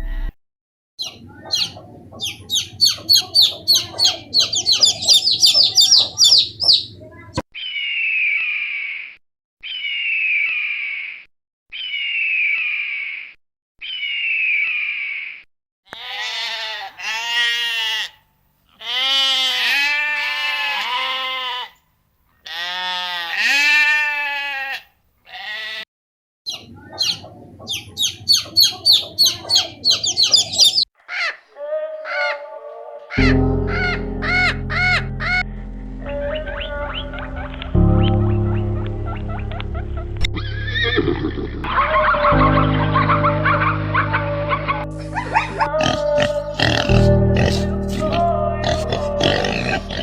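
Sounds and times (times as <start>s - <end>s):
high falling animal calls: 1.0s - 6.9s, 26.5s - 35.4s, 36.1s - 50.0s
short high chirping calls: 2.2s - 6.9s, 27.7s - 30.9s
long wavering bleats: 15.9s - 21.8s, 22.4s - 25.9s, 44.3s - 50.0s.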